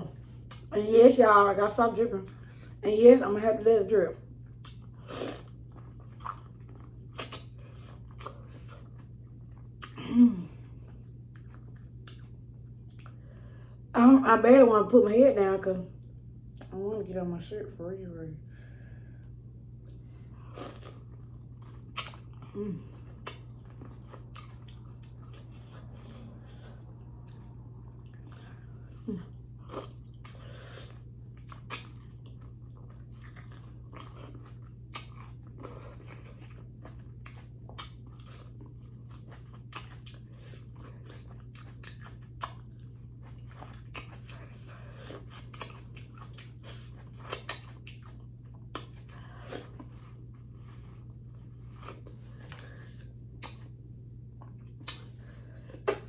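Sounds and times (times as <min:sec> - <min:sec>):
steady low hum: 0:00.0 - 0:56.0
chewing corn on the cob: 0:04.5 - 0:10.0, 0:10.9 - 0:13.2, 0:20.4 - 0:56.0.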